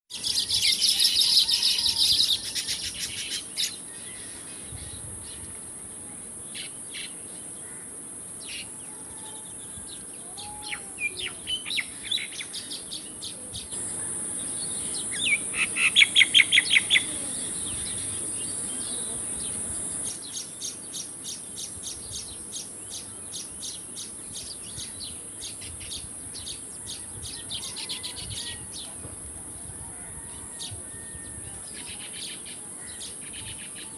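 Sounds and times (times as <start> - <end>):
birds chirping: 10.2 - 25.5
high-pitched hiss: 13.5 - 20.7.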